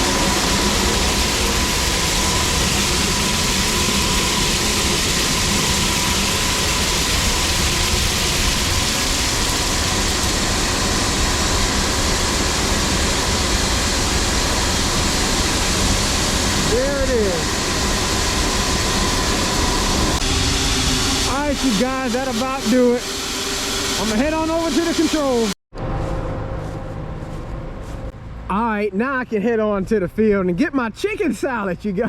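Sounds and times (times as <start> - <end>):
corn rushing out of auger: 20.2 - 25.5.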